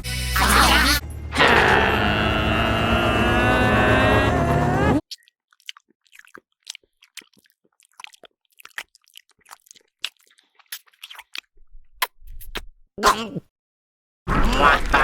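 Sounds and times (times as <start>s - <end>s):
cartoon crunching crackles: 2.7s - 12.6s.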